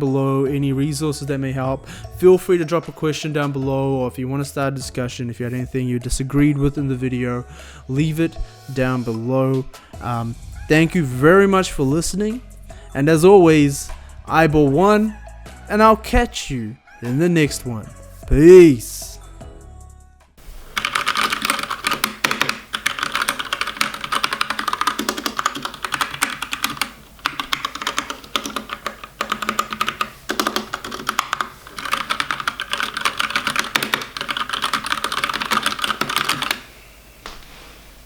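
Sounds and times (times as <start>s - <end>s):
mechanical keyboard key clacks: 20.8s - 36.6s.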